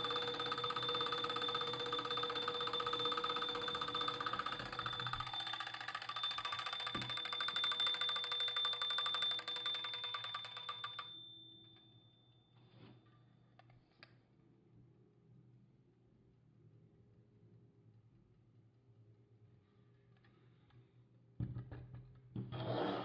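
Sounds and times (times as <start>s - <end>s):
alarm bell ringing: 0.0s - 12.0s.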